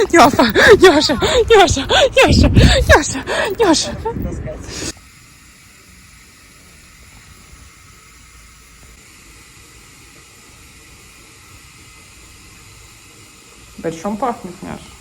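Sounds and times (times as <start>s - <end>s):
faint steady hiss: 4.5s - 15.0s.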